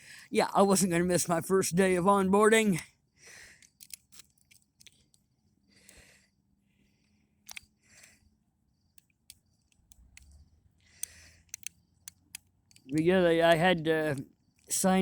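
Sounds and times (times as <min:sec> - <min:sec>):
lock picks clicking in a lock: 0:03.6 - 0:05.3, 0:07.4 - 0:08.2, 0:11.0 - 0:12.9.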